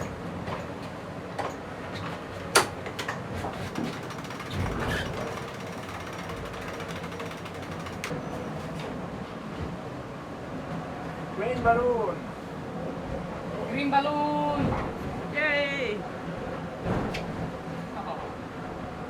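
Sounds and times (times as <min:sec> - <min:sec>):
gear clicking and knocking: 0:02.6 - 0:08.2
yacht onboard rush: 0:02.8 - 0:08.2.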